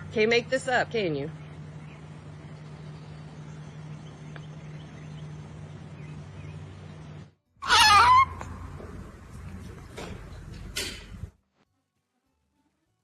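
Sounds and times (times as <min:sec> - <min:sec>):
low hum: 0:00.0 - 0:11.6
wavering animal cry: 0:07.6 - 0:08.6.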